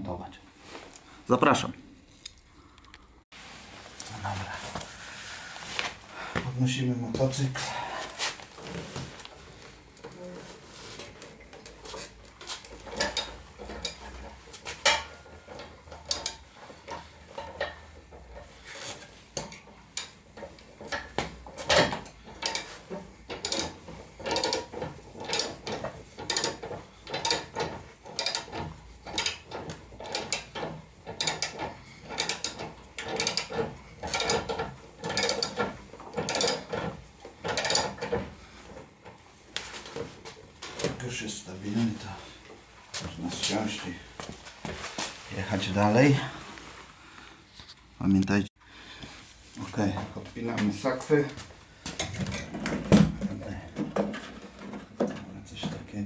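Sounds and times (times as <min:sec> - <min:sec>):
ratcheting lift clicks and clanks: 0:11.2 - 0:40.9.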